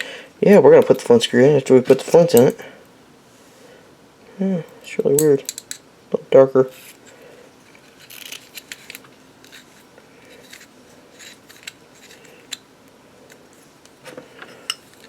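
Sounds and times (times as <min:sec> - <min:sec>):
small metal parts tapping: 0:05.0 - 0:05.8, 0:07.9 - 0:12.6.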